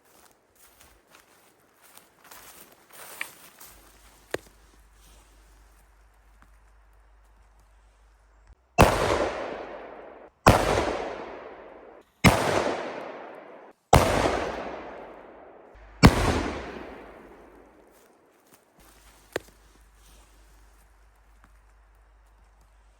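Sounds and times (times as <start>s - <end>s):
firecracker bangs with echo: 8.8s - 17.9s.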